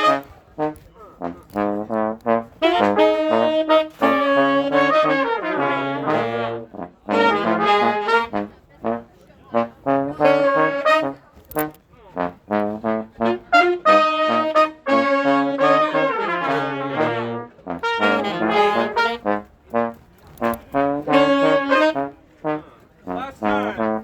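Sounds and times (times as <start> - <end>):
brass band playing: 0.0 - 24.0.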